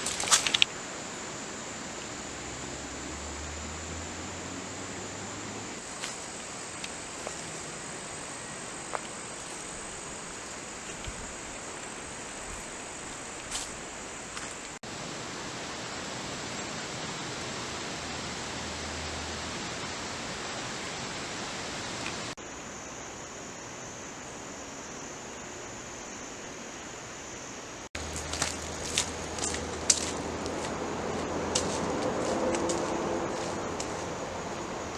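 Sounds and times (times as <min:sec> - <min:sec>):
crackling snaps: 0:00.0 - 0:00.7
high-pitched insect drone: 0:00.0 - 0:34.9
outdoor ambience hiss: 0:00.0 - 0:34.9.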